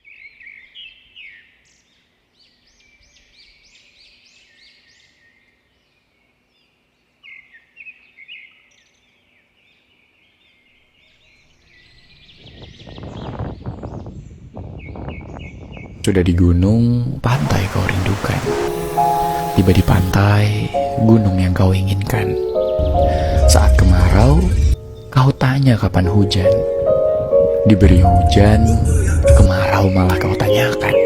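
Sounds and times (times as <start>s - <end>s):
rushing crackling noise: 17.2s - 30.8s
birds chirping: 17.2s - 31.0s.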